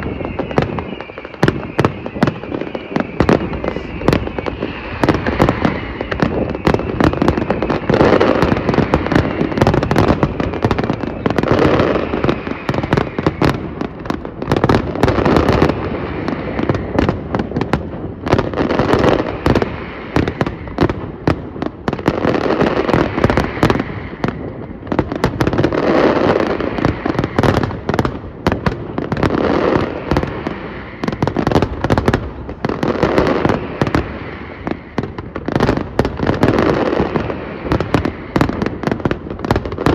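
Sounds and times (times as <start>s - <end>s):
rumble of explosions: 0.0s - 15.5s
fireworks bangs and crackling: 0.0s - 39.9s.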